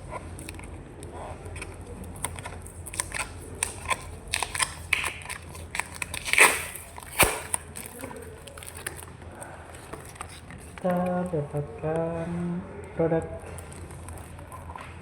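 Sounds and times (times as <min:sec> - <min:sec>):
plastic packaging crinkling: 0:00.3 - 0:11.4.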